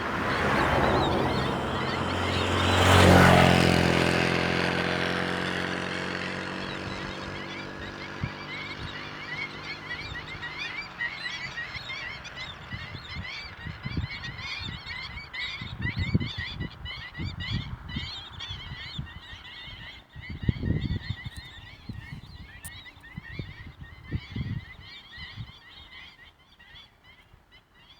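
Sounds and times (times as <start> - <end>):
seagulls calling: 0.0 - 16.4.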